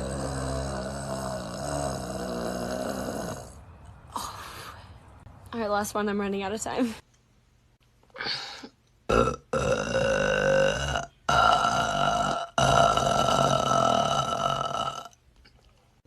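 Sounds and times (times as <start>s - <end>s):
woman burping: 0.0s - 3.5s, 8.2s - 15.1s.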